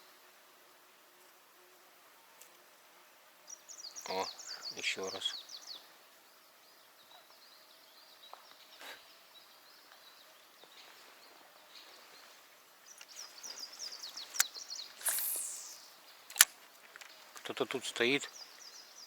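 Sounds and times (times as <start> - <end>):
faint outdoor ambience: 0.0 - 19.0
reel click: 14.3 - 16.6
fishing line swishing out: 15.0 - 16.5.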